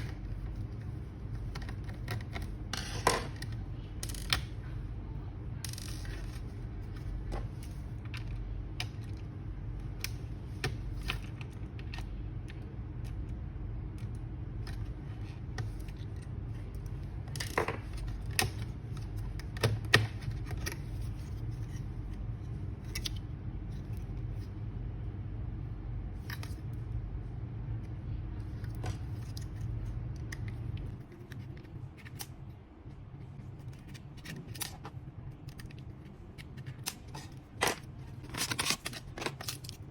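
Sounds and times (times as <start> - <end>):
steady low hum: 0.0 - 39.9
tools and plastic parts clicking: 33.8 - 39.9.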